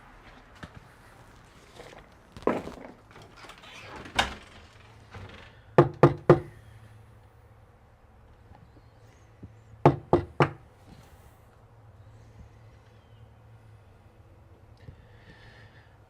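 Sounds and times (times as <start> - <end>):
knocking on a door: 5.8 - 6.5, 9.8 - 10.6.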